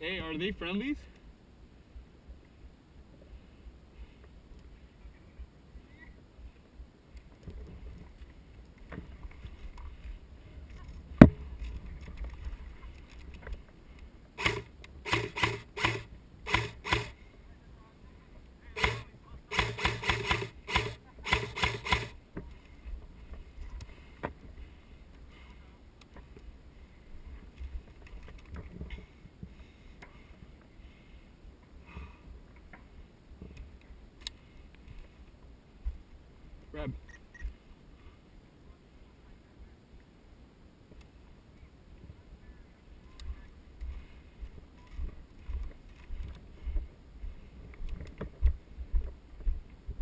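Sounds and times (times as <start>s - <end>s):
airsoft gun bursts: 14.4s - 17.2s, 18.8s - 22.2s
sharp crack: 18.8s - 22.2s.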